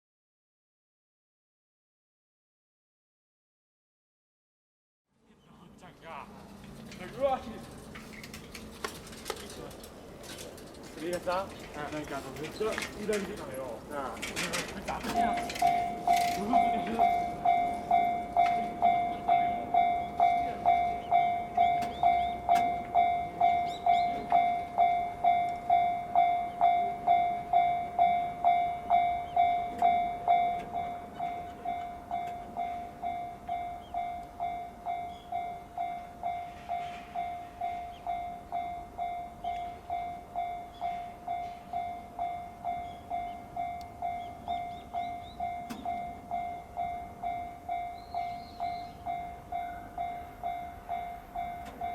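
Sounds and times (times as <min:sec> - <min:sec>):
electronic crossing bell dinging: 0:14.9 - 0:51.9.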